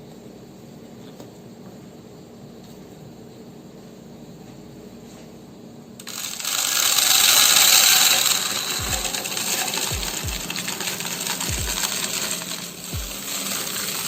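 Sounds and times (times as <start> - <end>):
dry food pouring into container: 6.0 - 14.0.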